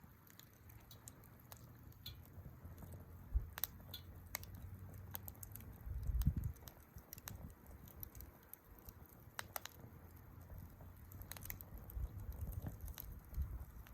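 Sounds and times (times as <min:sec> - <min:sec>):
campfire crackling and popping: 0:00.0 - 0:13.9.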